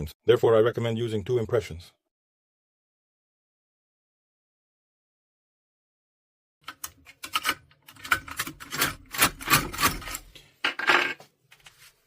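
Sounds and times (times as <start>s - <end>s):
lock tool clicking and scraping: 6.6s - 11.2s.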